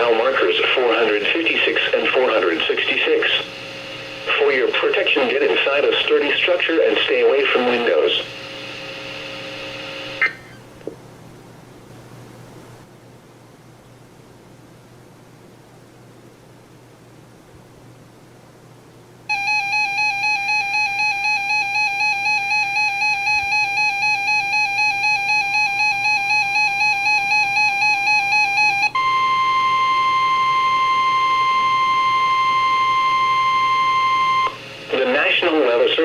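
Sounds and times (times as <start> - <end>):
steady warning alarm tone: 0.0 - 10.6, 19.3 - 36.0
warbling alert alarm: 19.3 - 35.4.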